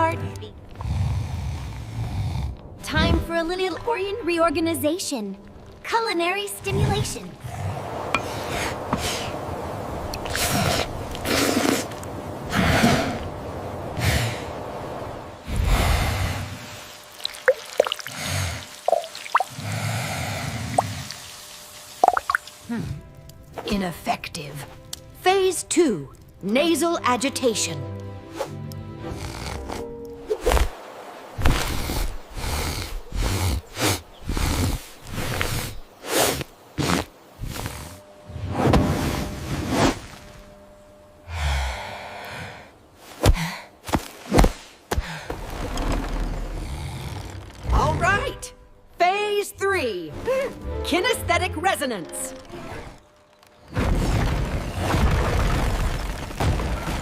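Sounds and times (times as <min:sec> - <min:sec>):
small drips and plops: 0:17.0 - 0:19.6, 0:20.7 - 0:22.6
cartoon breathy puffs and sniffs: 0:29.1 - 0:29.9, 0:31.6 - 0:38.0
cartoon heavy breaths or sniffs: 0:29.1 - 0:29.9.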